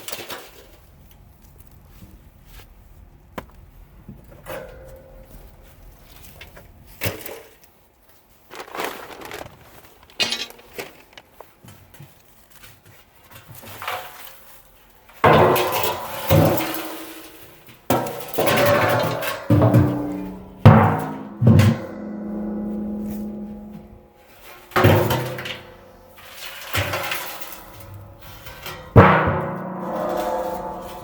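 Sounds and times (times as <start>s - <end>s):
hard objects clinking and knocking: 8.5s - 11.3s.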